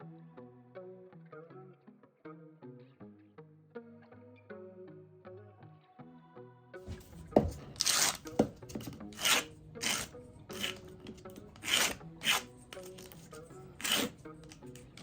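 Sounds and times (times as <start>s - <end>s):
sanding wood by hand: 6.9s - 14.3s.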